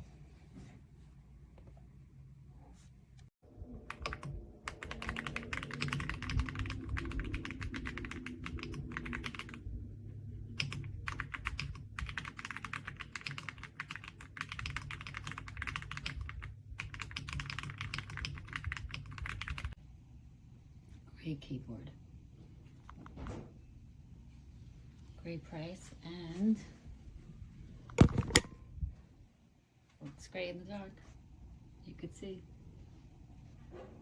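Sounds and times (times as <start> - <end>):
fast typing on mechanical keyboard: 3.8 - 9.6, 10.5 - 19.8.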